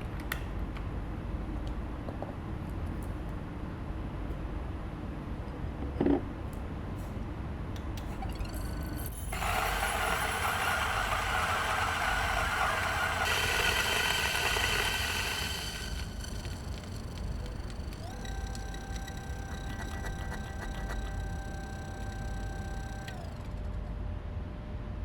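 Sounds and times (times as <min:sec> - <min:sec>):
kitchen appliance motor rushing: 0:08.0 - 0:23.9
steady humming tone: 0:08.0 - 0:24.0.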